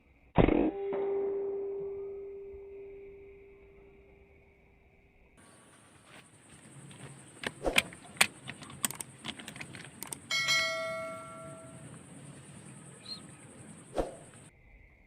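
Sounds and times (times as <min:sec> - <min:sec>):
struck metal ringing: 0:00.4 - 0:03.9, 0:10.2 - 0:12.9
sharp metallic clicks: 0:06.5 - 0:14.5.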